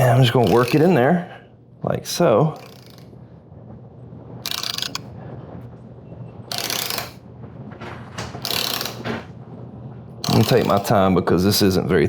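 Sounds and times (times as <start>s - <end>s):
ratcheting tap wrench clicking: 2.6s - 3.1s, 4.4s - 5.0s, 6.5s - 7.2s, 8.4s - 9.1s, 10.2s - 10.9s.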